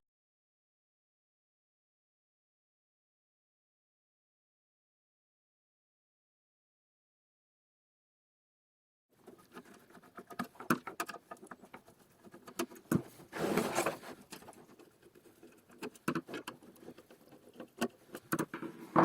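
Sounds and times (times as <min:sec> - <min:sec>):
scraping rustle: 0:09.2 - 0:19.0.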